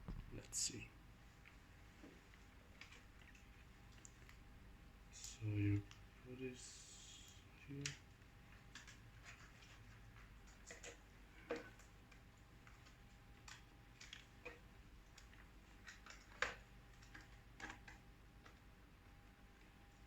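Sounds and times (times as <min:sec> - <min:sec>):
plastic laptop parts clicking: 0:07.7 - 0:18.6.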